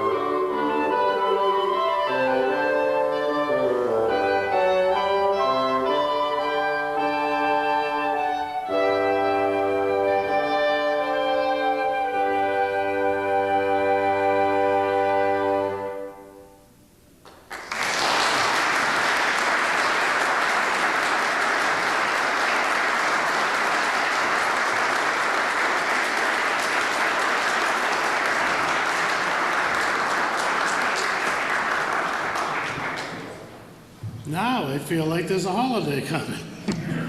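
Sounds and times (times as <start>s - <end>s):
brass band chord: 0.0s - 16.6s
audience applauding: 17.2s - 33.7s.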